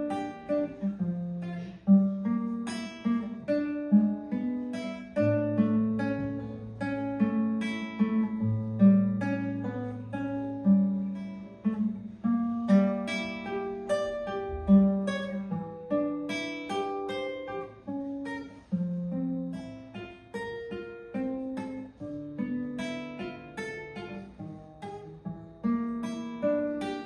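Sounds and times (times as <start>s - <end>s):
classical guitar playing: 0.0s - 27.0s.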